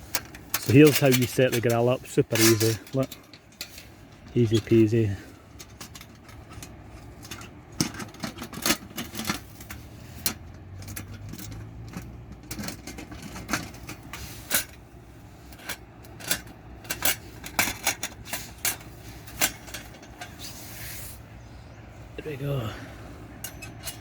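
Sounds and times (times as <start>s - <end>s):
metal grill clicking and clinking: 0.1s - 14.8s, 15.5s - 20.4s, 23.4s - 24.0s.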